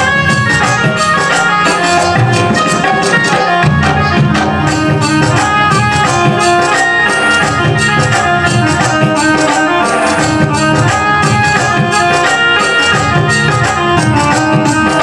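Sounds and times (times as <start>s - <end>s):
melody instrument holding notes: 0.0s - 15.0s
rhythmic percussion with jingles: 0.0s - 15.0s.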